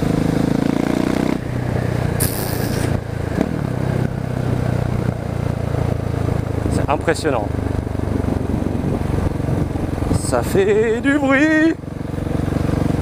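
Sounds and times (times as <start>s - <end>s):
motorcycle engine running: 0.0s - 13.0s
brief hiss: 2.2s - 3.0s.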